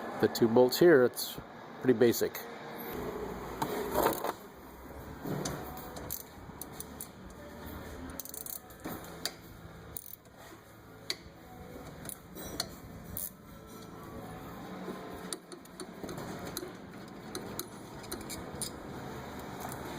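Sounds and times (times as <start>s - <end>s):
metallic clicks of hand tools: 8.2s - 9.4s.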